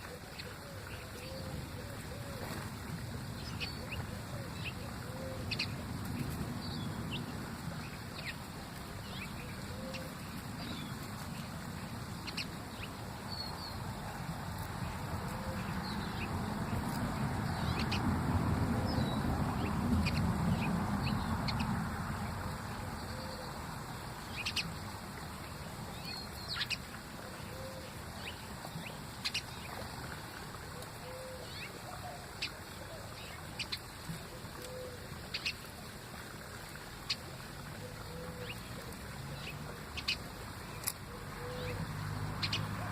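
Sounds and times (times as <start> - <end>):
birds chirping: 37.0 - 42.9.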